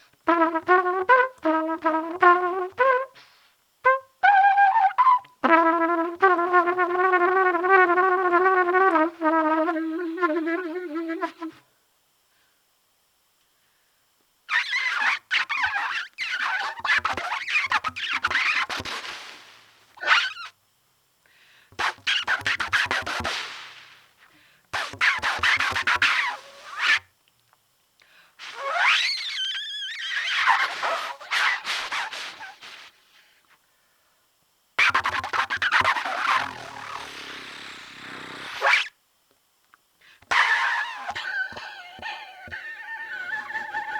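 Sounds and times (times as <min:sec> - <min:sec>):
trumpet wavering note: 0:00.3 - 0:03.2, 0:03.9 - 0:11.6
trumpet sputtered notes: 0:00.3 - 0:11.6, 0:14.5 - 0:19.0, 0:21.8 - 0:23.9, 0:24.8 - 0:27.0, 0:28.4 - 0:32.8, 0:34.8 - 0:38.9, 0:40.3 - 0:43.9
trumpet rising slide: 0:03.9 - 0:11.6, 0:20.0 - 0:20.5, 0:24.8 - 0:27.0, 0:28.4 - 0:32.9, 0:34.8 - 0:38.9.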